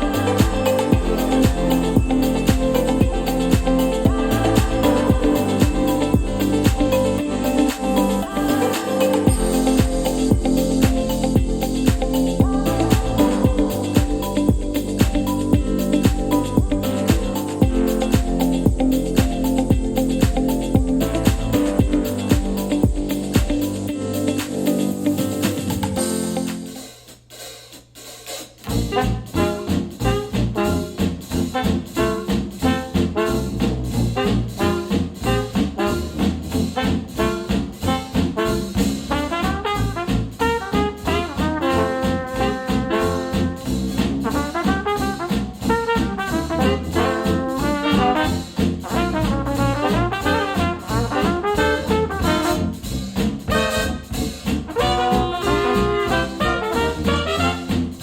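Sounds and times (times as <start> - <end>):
jazz music with horns: 0.0 - 58.0.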